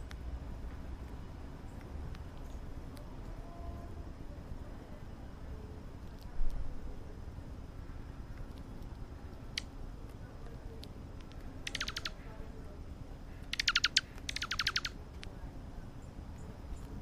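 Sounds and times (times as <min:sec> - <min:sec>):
small birds chirping: 0:01.6 - 0:03.8, 0:08.2 - 0:17.0.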